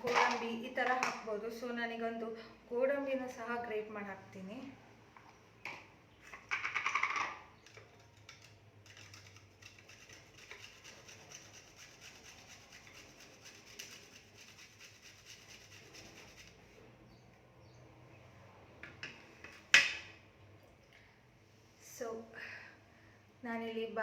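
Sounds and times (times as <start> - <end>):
nut scraping on hand grater: 7.6 - 16.6.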